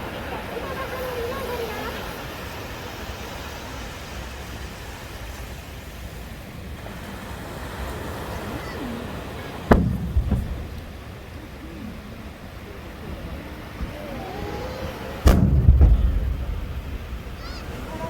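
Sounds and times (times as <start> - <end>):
firework shell bursting: 9.6 - 11.4, 15.2 - 18.0
steady low rumble: 9.7 - 13.0, 15.3 - 18.0.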